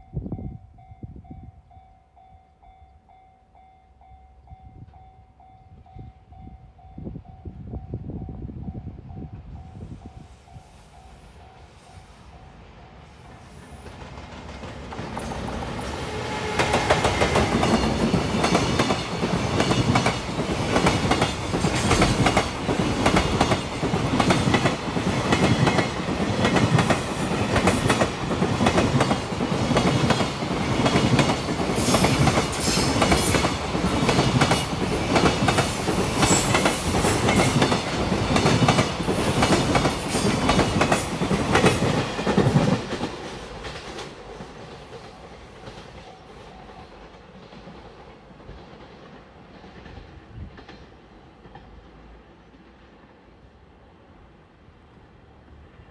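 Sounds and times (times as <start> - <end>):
train wheels clacking: 13.3 - 51.8.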